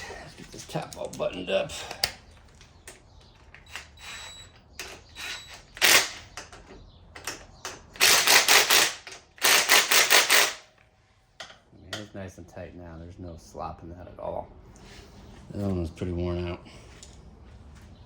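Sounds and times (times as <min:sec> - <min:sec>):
hand ratchet clicking: 0:07.2 - 0:10.6.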